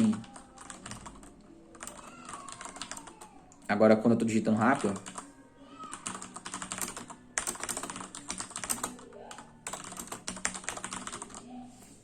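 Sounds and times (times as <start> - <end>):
mechanical keyboard typing: 0.0 - 3.2, 4.6 - 5.2, 5.9 - 11.4.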